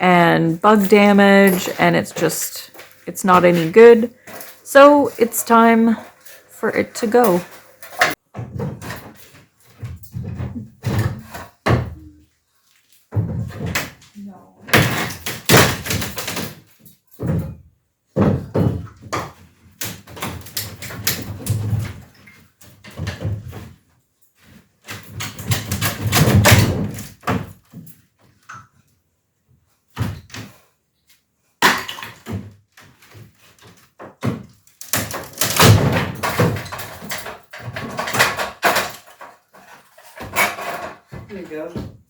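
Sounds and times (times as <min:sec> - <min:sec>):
ceiling material thudding and crashing: 0:13.1 - 0:23.8, 0:31.6 - 0:42.0.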